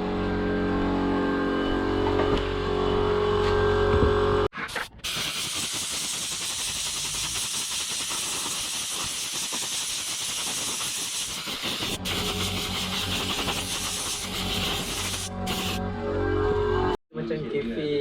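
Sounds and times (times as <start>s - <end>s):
mechanical hum: 0.0s - 4.5s
spray gun hissing: 5.0s - 15.8s.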